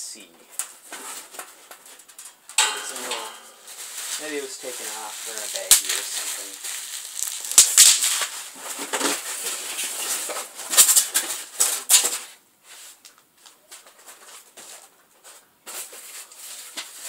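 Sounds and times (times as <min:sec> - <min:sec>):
packing material rustling: 0:03.0 - 0:12.3.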